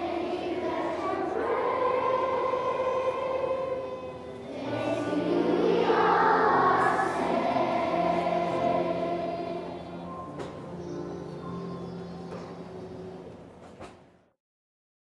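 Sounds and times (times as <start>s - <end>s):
choir singing: 0.0s - 11.8s
musical accompaniment: 0.0s - 14.0s.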